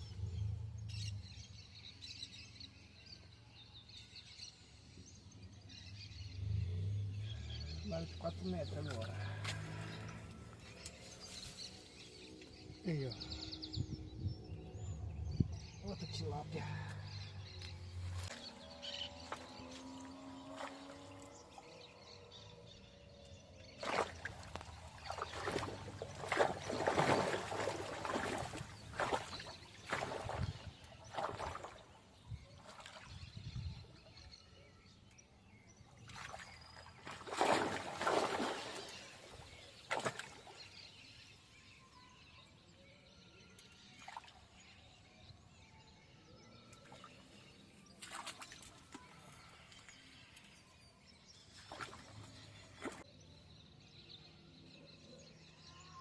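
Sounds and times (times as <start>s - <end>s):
water splashing and sloshing: 7.8s - 12.6s, 16.0s - 21.9s, 23.2s - 33.9s, 35.9s - 40.9s, 46.8s - 53.1s
fish thrashing at water surface: 23.8s - 31.8s, 37.0s - 39.0s.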